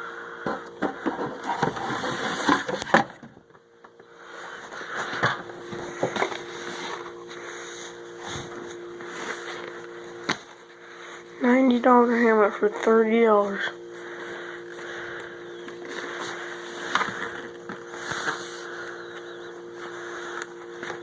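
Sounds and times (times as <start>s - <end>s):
cardboard packaging rustling: 1.3s - 3.3s.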